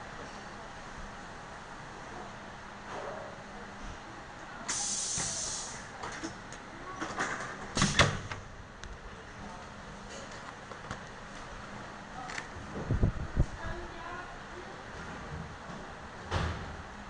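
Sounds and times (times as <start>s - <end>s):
compressed air hiss: 4.7s - 5.9s.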